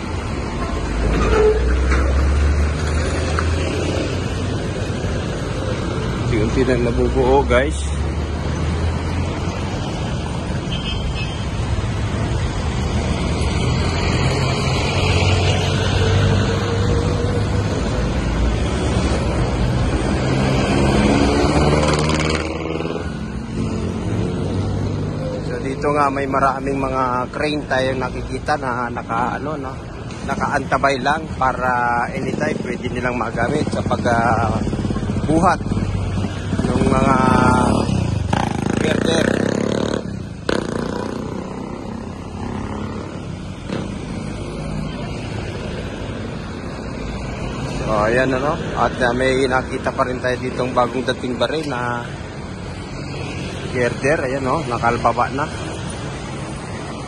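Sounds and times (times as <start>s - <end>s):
vehicle passing by: 0.0s - 10.6s, 11.6s - 25.8s, 31.6s - 57.0s
vehicle engines running: 0.0s - 57.0s
vehicle speeding up: 12.5s - 25.2s, 33.5s - 48.6s.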